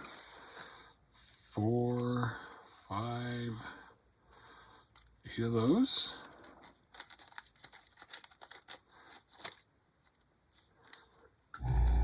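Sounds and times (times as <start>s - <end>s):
plastic bag crinkling: 6.2s - 9.7s.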